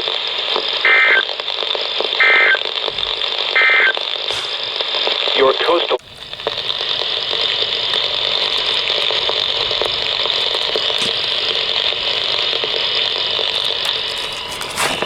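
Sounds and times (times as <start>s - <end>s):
radio static hiss: 0.0s - 15.0s
broadcast voice message: 5.3s - 7.0s.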